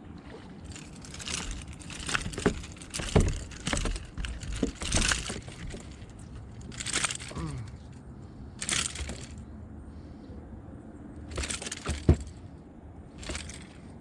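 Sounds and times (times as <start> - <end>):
fishing gear knocking and rattling: 0.6 - 8.0, 8.6 - 9.4, 11.3 - 12.5, 13.2 - 14.0.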